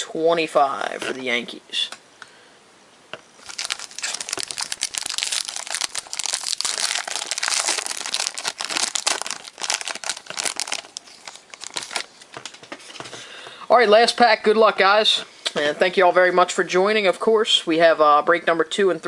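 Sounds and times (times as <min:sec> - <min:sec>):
plastic wrapper crinkling: 0:03.4 - 0:13.0.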